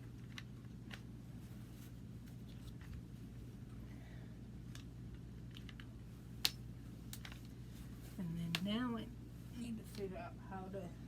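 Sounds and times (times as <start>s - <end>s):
steady low hum: 0.0s - 11.0s
plastic parts clicking and tapping: 4.7s - 7.5s.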